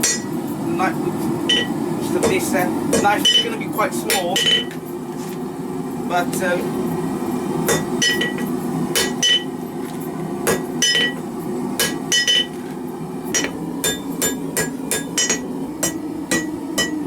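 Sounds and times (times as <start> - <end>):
hammer striking metal on anvil: 0.0 - 0.4, 1.5 - 4.8, 7.7 - 9.5, 10.4 - 11.2, 11.8 - 12.6, 13.3 - 17.0.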